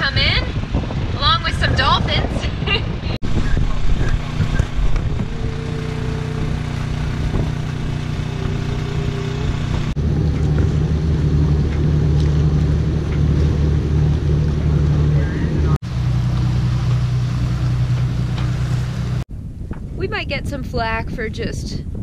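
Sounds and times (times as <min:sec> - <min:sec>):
boat engine humming: 0:02.8 - 0:19.3.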